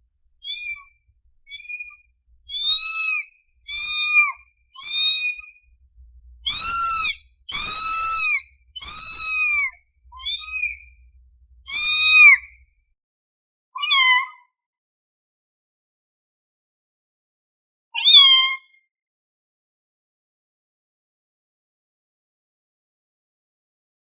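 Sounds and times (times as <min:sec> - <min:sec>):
kitten mewing: 0:00.4 - 0:00.8, 0:02.5 - 0:05.5, 0:06.5 - 0:10.8, 0:11.7 - 0:12.5.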